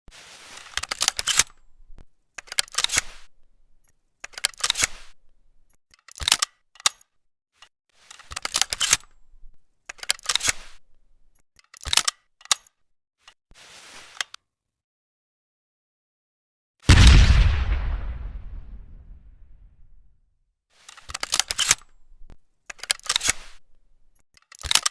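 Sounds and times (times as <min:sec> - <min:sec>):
brief rustle: 0:00.1 - 0:01.7, 0:12.6 - 0:14.5, 0:20.8 - 0:24.9
shotgun mechanical clicks: 0:04.2 - 0:05.3, 0:05.9 - 0:07.1, 0:08.1 - 0:11.0, 0:11.6 - 0:12.8, 0:20.9 - 0:24.9.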